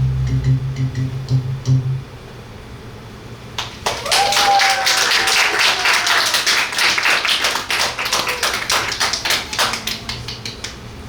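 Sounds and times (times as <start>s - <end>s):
audience applauding: 3.6s - 11.0s
person whooping: 3.9s - 6.8s, 7.8s - 10.1s.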